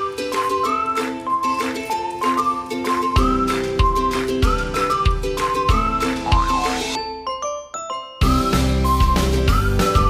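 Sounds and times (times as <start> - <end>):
whistled melody: 0.0 - 10.0
upbeat bass and drums backing: 1.6 - 7.0, 8.2 - 10.0.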